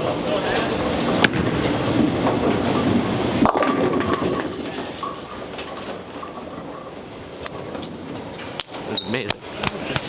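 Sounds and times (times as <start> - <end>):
bowling ball rolling down lane: 1.0 - 8.5.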